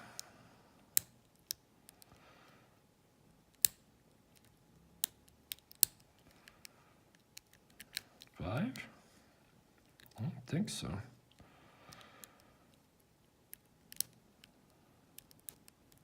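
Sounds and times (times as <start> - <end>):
lock pick clicking in padlock: 3.5 - 6.4.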